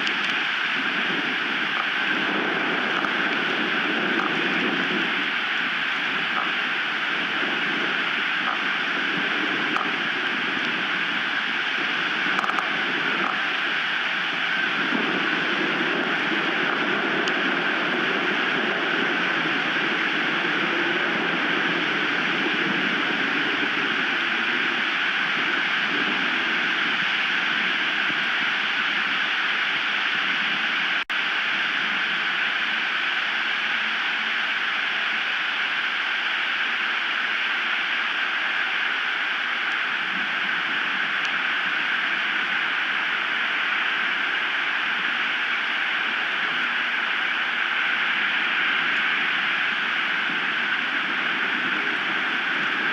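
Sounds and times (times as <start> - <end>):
high wind rushing: 0.0 - 30.8.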